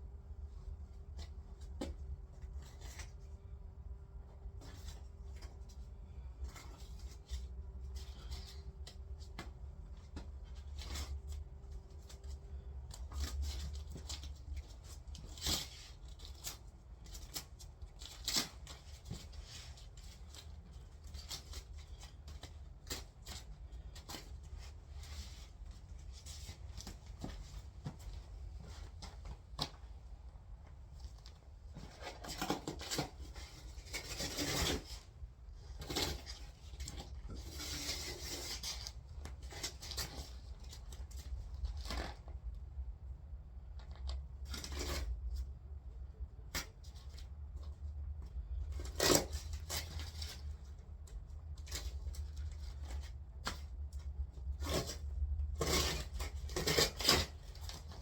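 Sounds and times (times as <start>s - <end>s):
tape peeling with rasping tears: 54.6s - 58.0s.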